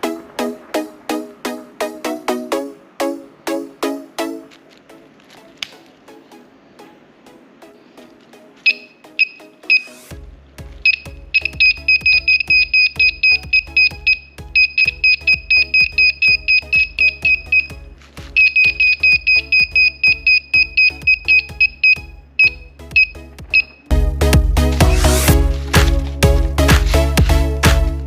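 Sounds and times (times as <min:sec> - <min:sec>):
background music: 0:00.0 - 0:28.0
electronic buzzer beeping rapidly: 0:08.7 - 0:10.0, 0:10.8 - 0:17.8, 0:18.4 - 0:23.8.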